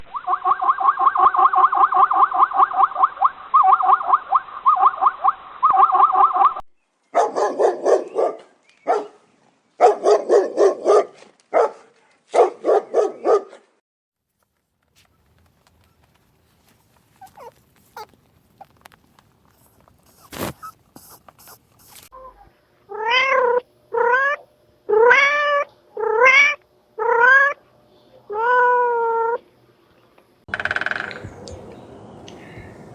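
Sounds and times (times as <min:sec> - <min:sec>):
animal repeated pitched calls: 0:00.0 - 0:06.6, 0:22.2 - 0:27.6, 0:28.3 - 0:29.5, 0:30.5 - 0:31.2
animal sharp rapid calls: 0:00.1 - 0:05.1, 0:22.2 - 0:27.6, 0:28.2 - 0:29.5.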